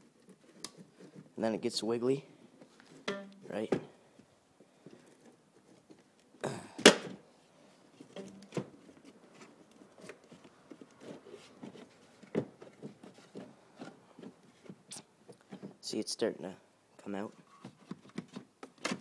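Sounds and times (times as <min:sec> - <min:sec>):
plastic scrape: 0:08.0 - 0:14.8
plastic clicks and rubbing: 0:17.4 - 0:19.0.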